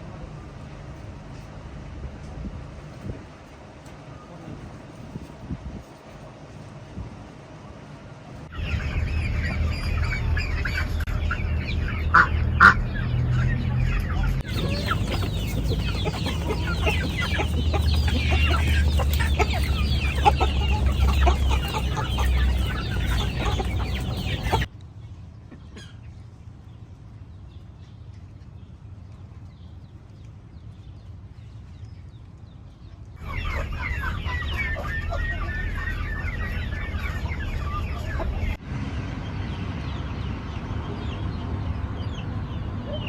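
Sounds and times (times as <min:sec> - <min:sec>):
chickens clucking: 0:14.4 - 0:24.7.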